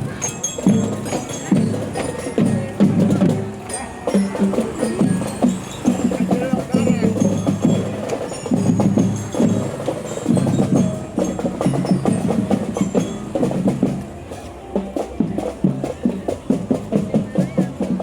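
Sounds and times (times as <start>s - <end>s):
marching drum band: 0.0s - 18.0s.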